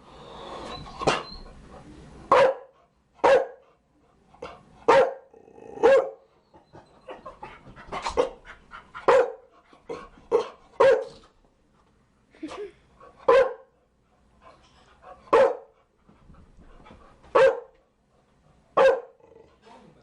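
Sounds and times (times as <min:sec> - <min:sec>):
dog barking: 0:02.3 - 0:03.6, 0:04.9 - 0:06.3, 0:09.1 - 0:09.5, 0:10.4 - 0:11.2, 0:13.3 - 0:13.7, 0:15.3 - 0:15.7, 0:17.3 - 0:17.8, 0:18.8 - 0:19.2.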